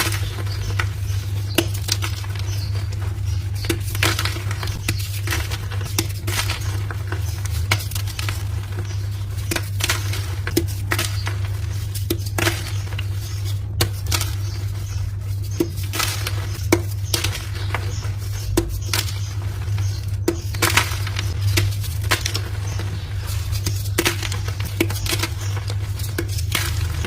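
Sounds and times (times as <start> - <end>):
chalk blocks crunching: 0.0 - 27.0
steady low hum: 0.0 - 27.0.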